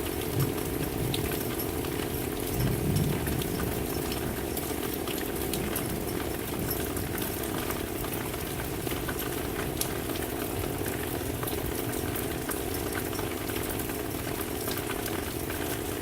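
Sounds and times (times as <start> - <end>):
raindrops ticking: 0.0 - 16.0
steady rain falling: 0.0 - 16.0.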